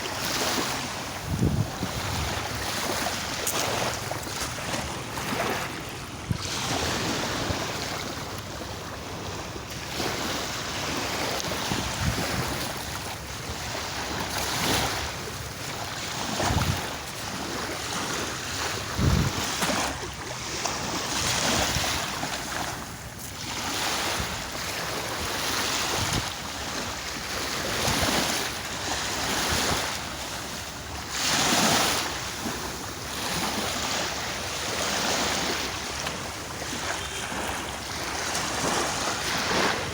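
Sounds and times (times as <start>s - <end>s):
wind buffeting microphone: 0.0s - 28.4s
sea waves breaking: 0.0s - 39.9s.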